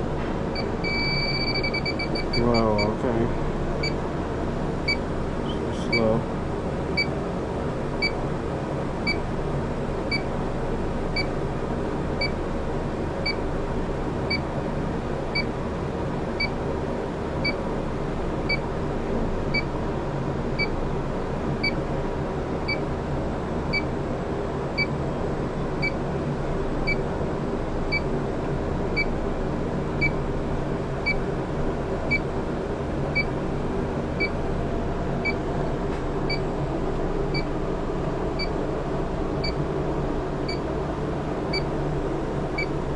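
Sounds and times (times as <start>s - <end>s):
steady mechanical hum: 0.0s - 42.9s
leak detector beeping: 0.6s - 3.0s.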